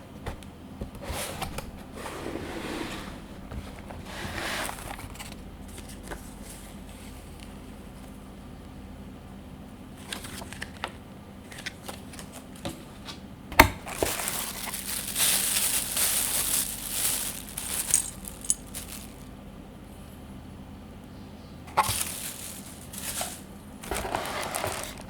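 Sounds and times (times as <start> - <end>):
plastic wrapping crinkling: 13.8 - 19.3, 21.7 - 25.0.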